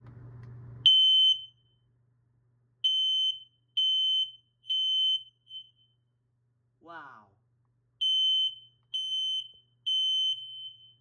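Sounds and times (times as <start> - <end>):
smoke alarm beeping: 0.9 - 1.8, 2.8 - 6.0, 8.0 - 11.0.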